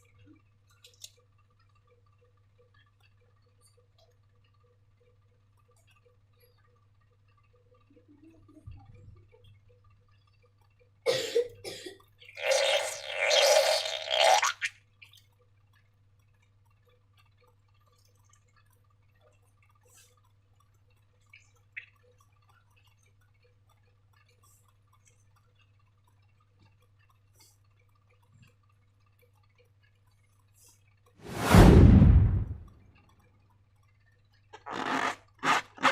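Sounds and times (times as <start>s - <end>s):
faint small clicks: 0.0s - 11.0s, 15.0s - 31.2s.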